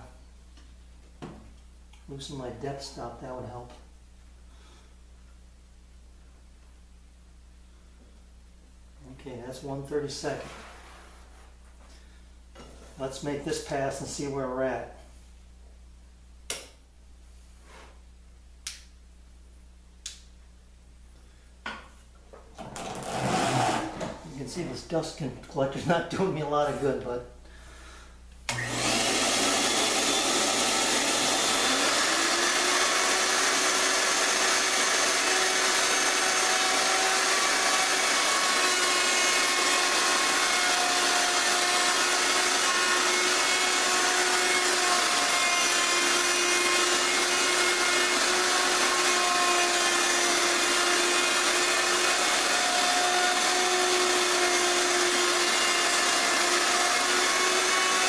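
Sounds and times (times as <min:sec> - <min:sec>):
router whining while cutting wood: 0:22.8 - 0:24.0, 0:28.5 - 0:58.0.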